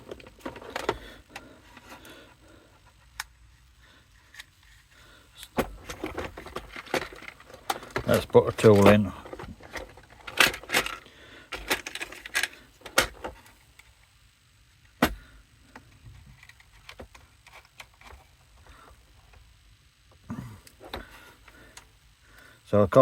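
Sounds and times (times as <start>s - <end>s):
accessories clicking and rattling: 5.4s - 13.4s.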